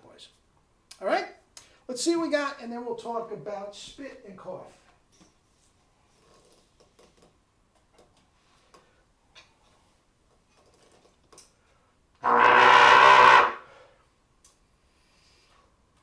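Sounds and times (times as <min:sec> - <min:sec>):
trumpet held note: 0:12.2 - 0:13.6.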